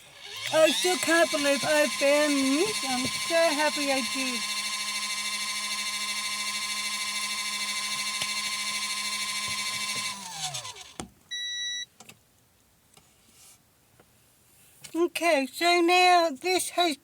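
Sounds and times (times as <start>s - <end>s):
washing machine motor humming: 0.0s - 11.0s
short electronic beep: 11.3s - 11.8s.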